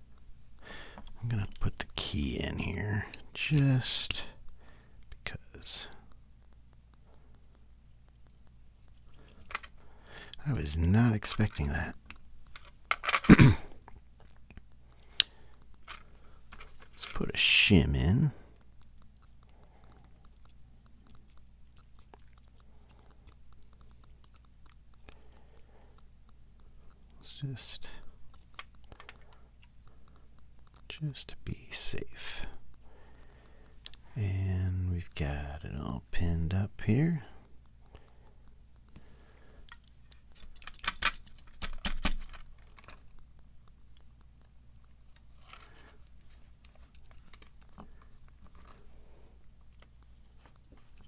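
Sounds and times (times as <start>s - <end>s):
padlock parts clicking and rattling: 7.4s - 13.4s, 14.2s - 17.4s, 28.4s - 29.8s, 39.6s - 43.2s, 45.1s - 48.8s
padlock metallic clicks and scrapes: 39.6s - 43.1s.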